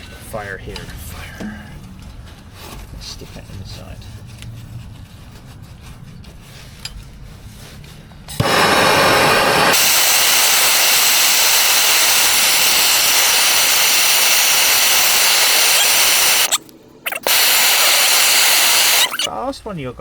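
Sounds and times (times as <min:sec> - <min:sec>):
rushing air hiss: 0:08.4 - 0:19.3.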